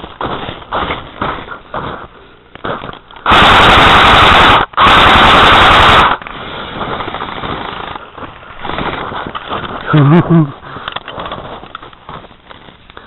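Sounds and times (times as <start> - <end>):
airsoft gun firing bursts: 3.2 - 8.1.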